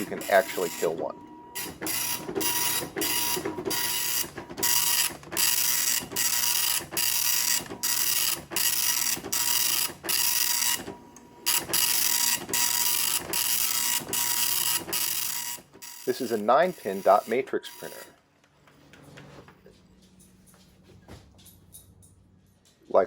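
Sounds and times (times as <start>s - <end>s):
dot matrix printer printing: 0.0s - 18.2s.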